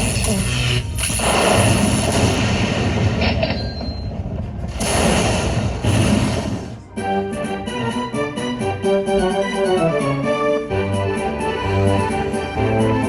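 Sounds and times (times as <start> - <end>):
slot machine booming bursts: 0.0 - 6.9.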